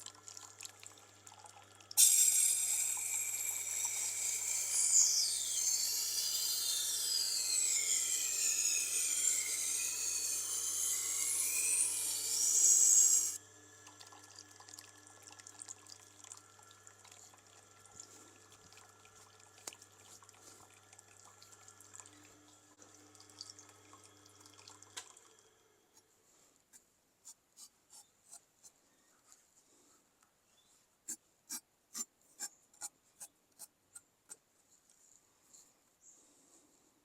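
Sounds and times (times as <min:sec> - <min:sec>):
loud grinding: 0:02.0 - 0:13.4
sharpener motor humming: 0:02.0 - 0:13.4.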